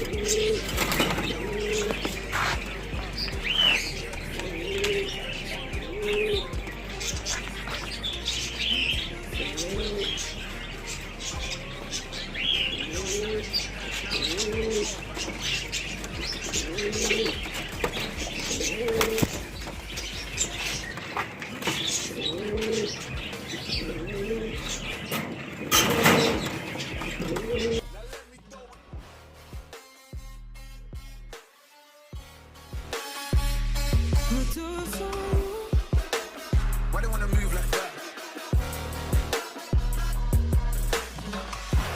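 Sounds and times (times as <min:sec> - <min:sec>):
pigeons cooing: 0:00.0 - 0:27.8
birds chirping: 0:00.0 - 0:28.9, 0:32.2 - 0:41.9.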